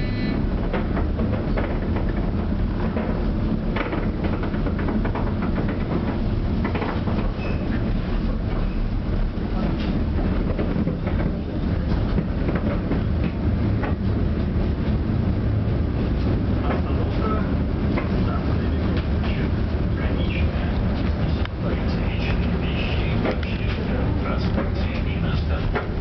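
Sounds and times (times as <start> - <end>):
tram rumbling on rails: 0.0 - 26.0.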